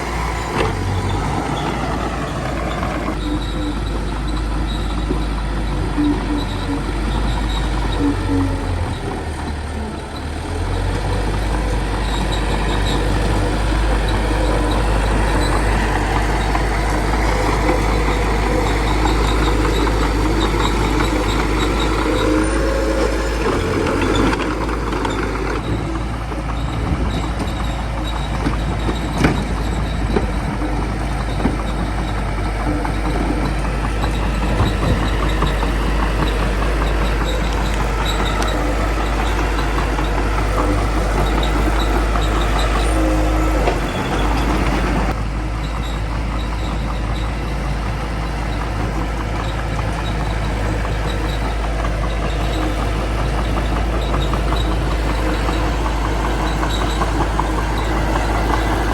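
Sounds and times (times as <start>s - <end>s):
bulldozer diesel engine running: 0.0s - 58.9s
sharp metallic knocks: 11.4s - 47.4s.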